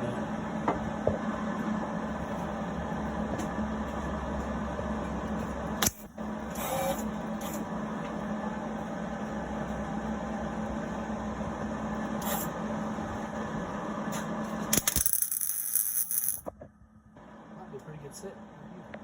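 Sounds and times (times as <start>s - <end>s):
low electrical hum: 0.0s - 19.0s
arc welder crackling: 5.8s - 7.5s, 14.8s - 16.5s.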